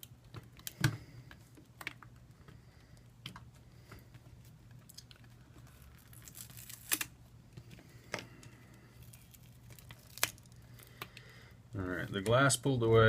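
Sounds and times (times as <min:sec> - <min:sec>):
glass clicking and crackling: 0:09.0 - 0:11.1.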